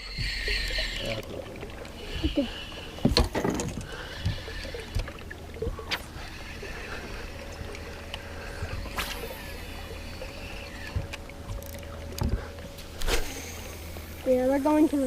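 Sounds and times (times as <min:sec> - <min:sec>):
steady low hum: 0:00.0 - 0:15.0
thin steady whine: 0:00.0 - 0:15.0
knocks and clatter on boat: 0:03.0 - 0:05.9, 0:10.9 - 0:12.9.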